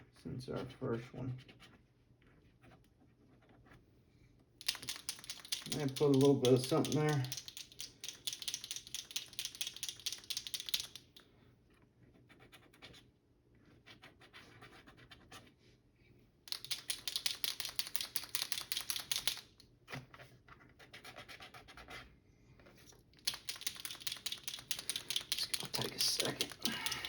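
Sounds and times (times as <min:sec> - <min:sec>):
paint pen ball rattling: 0:04.6 - 0:11.2, 0:16.5 - 0:19.6, 0:23.2 - 0:27.0.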